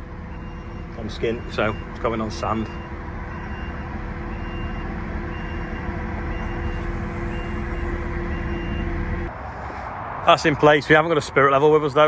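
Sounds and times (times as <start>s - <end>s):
reversing alarm beeping: 0.0s - 9.3s
engine running steadily: 0.0s - 9.8s.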